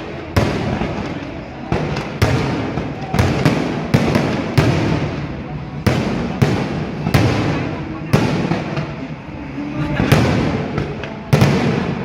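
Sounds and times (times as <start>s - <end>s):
aerial fireworks bangs: 0.0s - 9.2s, 9.8s - 12.0s.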